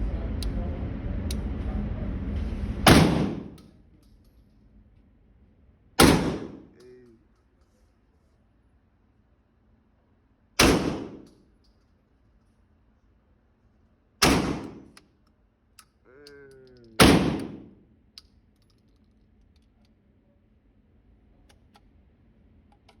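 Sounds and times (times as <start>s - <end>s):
shotgun blasts: 2.9s - 3.6s, 6.0s - 6.8s, 10.6s - 11.2s, 14.2s - 14.9s, 17.0s - 17.7s.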